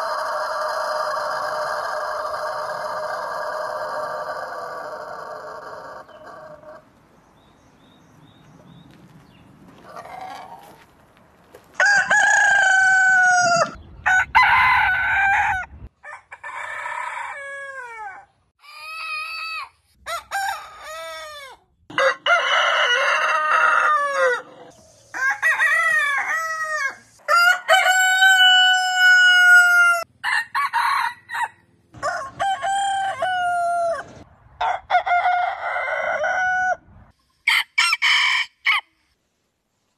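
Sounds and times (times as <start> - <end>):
roosters crowing: 0.0 - 6.9, 9.8 - 10.8, 11.7 - 38.9.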